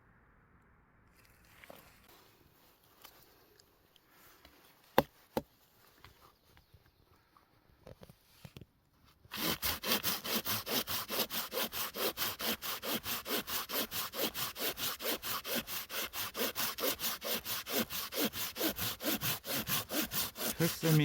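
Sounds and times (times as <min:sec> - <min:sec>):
hand saw cutting log: 0:09.3 - 0:21.0.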